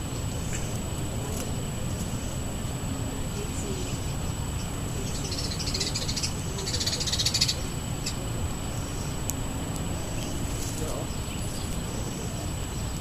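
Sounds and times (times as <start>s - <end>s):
bird harsh rattling calls: 5.1s - 8.2s.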